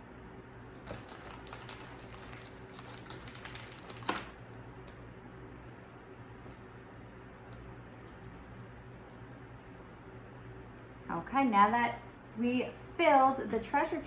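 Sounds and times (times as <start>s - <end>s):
plastic bag crinkling: 0.8s - 4.4s.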